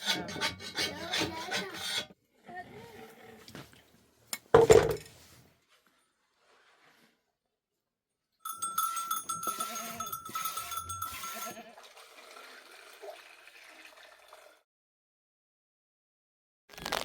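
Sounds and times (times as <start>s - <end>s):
livestock bell clanking: 8.4s - 11.7s
flock of sheep: 8.5s - 12.0s.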